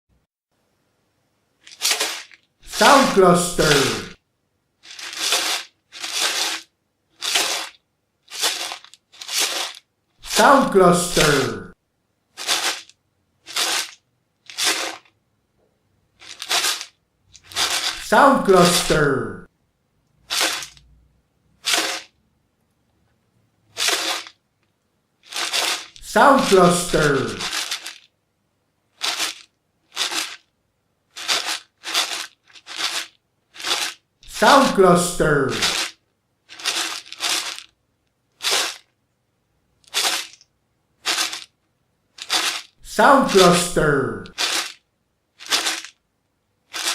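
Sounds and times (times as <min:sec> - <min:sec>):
dry grain shaken: 0:04.9 - 0:09.8, 0:17.5 - 0:18.0, 0:27.4 - 0:28.0, 0:31.2 - 0:34.0.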